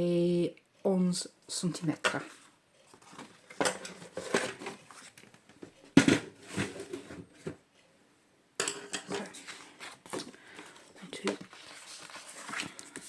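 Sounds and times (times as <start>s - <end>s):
paper scraping and rustling: 2.3s - 5.4s, 9.2s - 10.3s, 11.4s - 13.0s.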